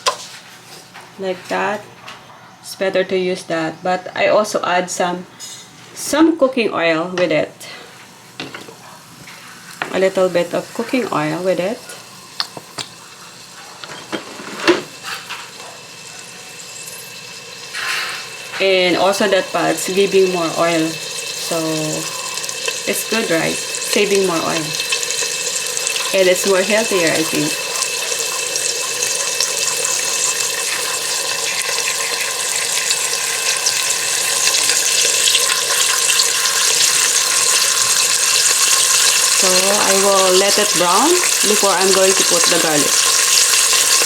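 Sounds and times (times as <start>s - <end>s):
chicken sizzling in a pan: 8.2s - 44.0s.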